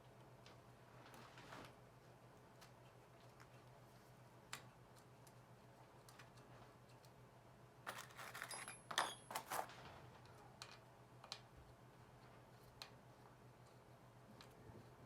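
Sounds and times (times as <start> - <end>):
metal parts clinking and rattling: 7.9 - 9.8.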